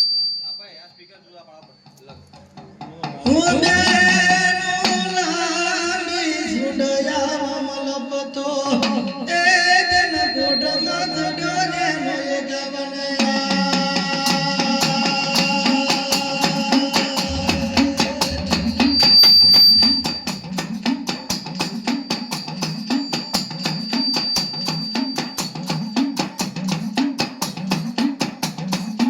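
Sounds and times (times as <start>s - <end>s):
drums fast beat: 1.5s - 7.7s, 8.7s - 29.0s
person singing ornamented: 4.8s - 18.8s
steady drone: 14.8s - 20.8s.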